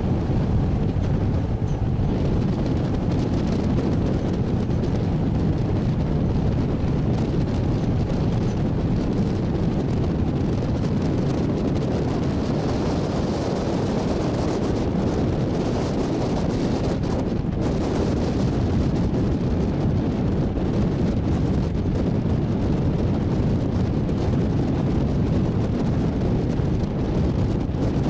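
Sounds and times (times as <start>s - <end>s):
rushing water: 0.0s - 4.3s
ferry engine rumble: 0.0s - 28.0s
wind buffeting microphone: 0.0s - 28.0s.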